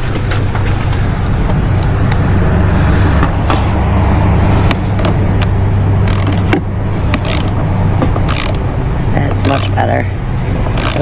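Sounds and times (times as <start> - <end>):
low mechanical hum: 0.0 - 11.0
metallic clicks of hand tools: 5.4 - 7.6, 8.2 - 8.6, 9.4 - 9.8, 10.8 - 11.0.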